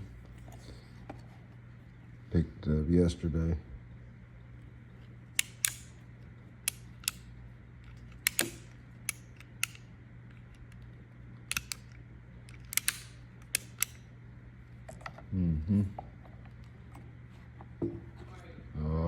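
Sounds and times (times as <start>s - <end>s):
revolver mechanism clicking: 5.3s - 14.1s.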